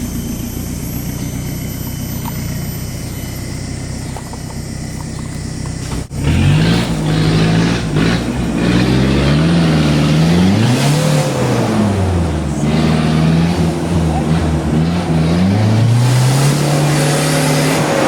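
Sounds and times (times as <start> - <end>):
vehicle engine revving: 0.0 - 18.0.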